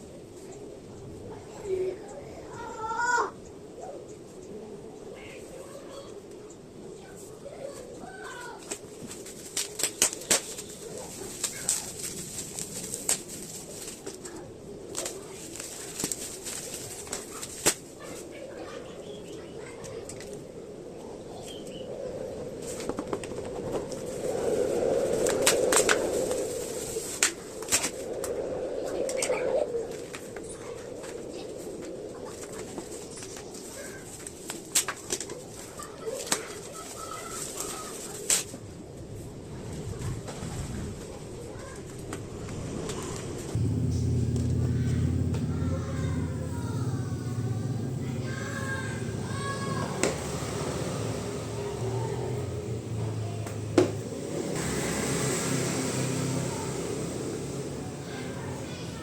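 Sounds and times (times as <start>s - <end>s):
low wavering background noise: 0.0s - 59.0s
birds cooing: 28.3s - 34.1s, 43.6s - 53.4s.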